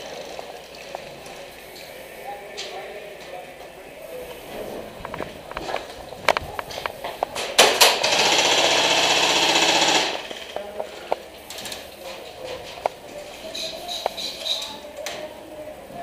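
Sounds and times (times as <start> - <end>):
airsoft rifle firing: 7.5 - 10.6.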